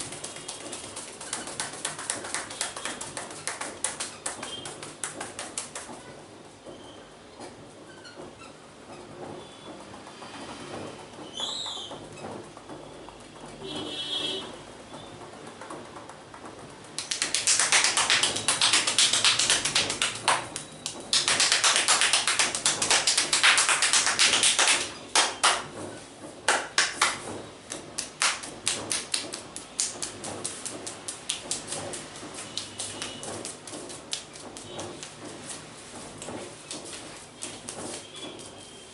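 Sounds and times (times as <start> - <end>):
hands tapping and slapping head: 0.0 - 6.1, 15.6 - 38.6.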